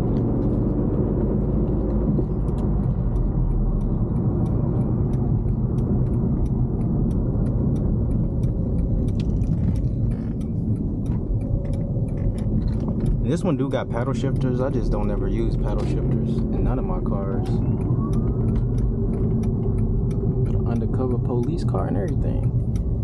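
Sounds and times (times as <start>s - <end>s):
car engine and road rumble: 0.0s - 23.0s
regular ticking: 0.0s - 23.0s.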